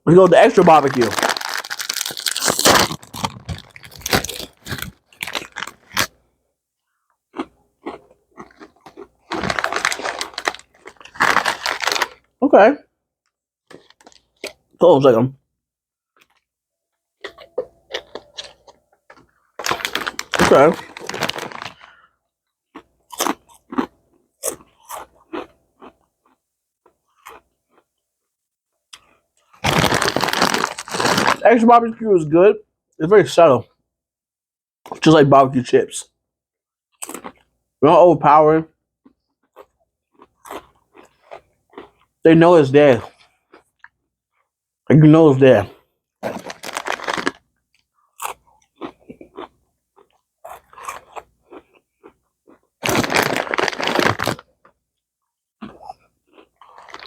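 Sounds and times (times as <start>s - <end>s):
potato chips crunched and chewed: 0.4s - 6.1s, 7.4s - 12.3s, 13.7s - 14.6s, 17.2s - 22.0s, 29.0s - 31.4s, 46.2s - 47.4s, 48.1s - 54.5s, 55.6s - 57.0s.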